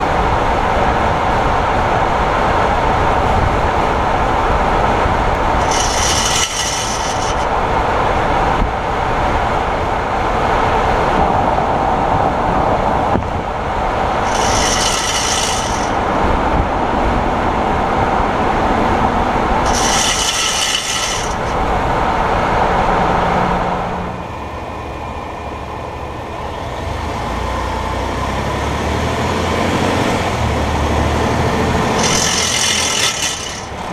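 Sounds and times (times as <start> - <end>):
driveline grinding while driving: 5.0 - 8.6, 13.9 - 16.3, 19.4 - 22.1, 29.6 - 33.9
high-pitched grinding bursts: 5.5 - 7.6, 14.1 - 16.0, 19.6 - 21.6, 31.8 - 33.9.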